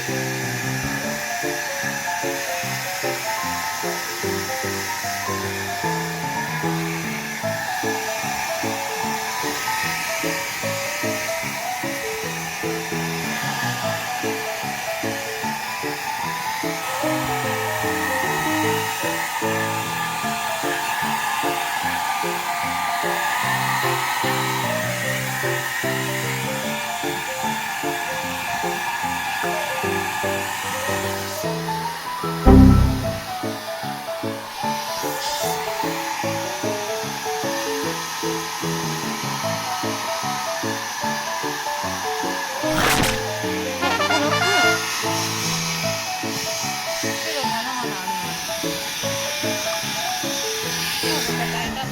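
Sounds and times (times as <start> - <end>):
background music of repeated notes: 32.4 - 33.4.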